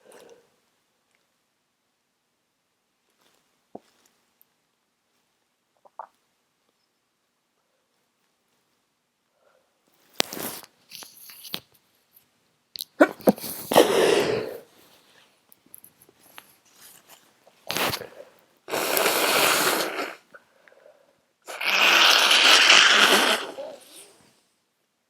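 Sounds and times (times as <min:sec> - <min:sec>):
person sneezing: 0:13.0 - 0:14.7, 0:21.5 - 0:24.2.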